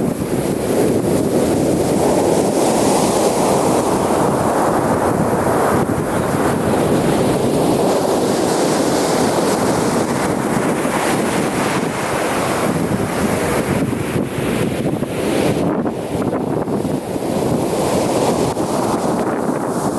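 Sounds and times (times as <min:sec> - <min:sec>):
waves breaking on beach: 0:00.0 - 0:19.9
wind buffeting microphone: 0:00.0 - 0:19.9.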